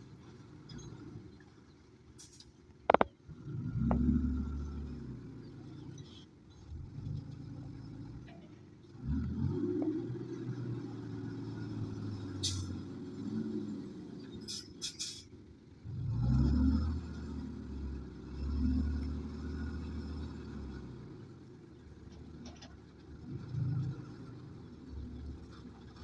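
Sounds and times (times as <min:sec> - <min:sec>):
heavy diesel engine revving: 0:03.3 - 0:08.3, 0:08.9 - 0:15.2, 0:15.8 - 0:21.5
air hiss: 0:14.5 - 0:15.2.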